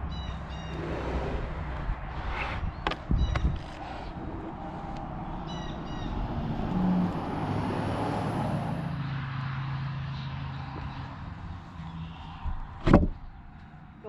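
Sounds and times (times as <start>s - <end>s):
road vehicle passing: 0.0s - 14.0s.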